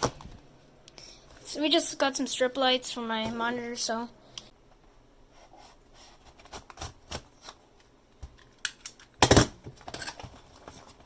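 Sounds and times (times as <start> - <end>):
packaging clicks and scrapes: 9.7 - 11.0.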